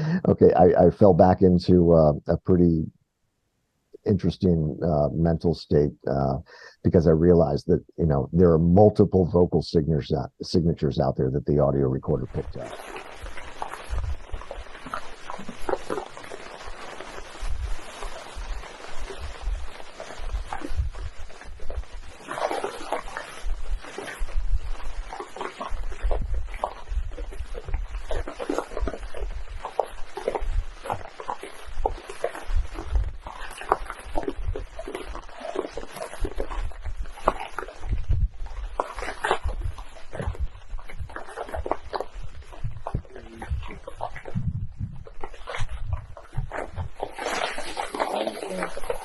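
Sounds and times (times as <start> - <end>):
low wind rumble on microphone: 12.1 - 49.0.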